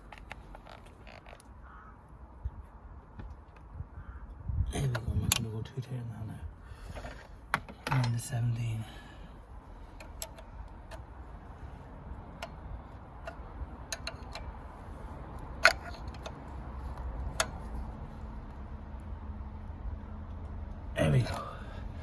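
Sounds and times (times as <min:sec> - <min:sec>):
spanner clicking on nuts: 0:09.9 - 0:11.1, 0:12.2 - 0:14.6, 0:15.3 - 0:17.9.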